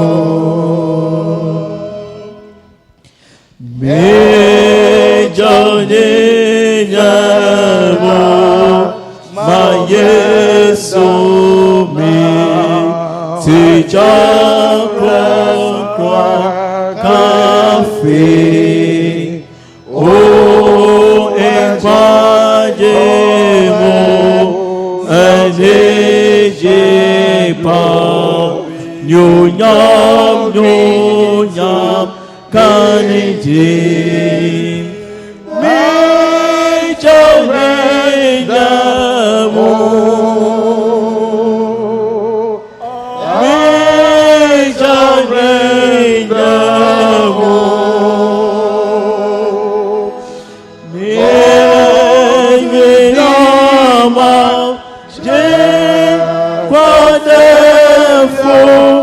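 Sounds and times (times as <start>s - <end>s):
singing slow church song: 0.0s - 59.0s.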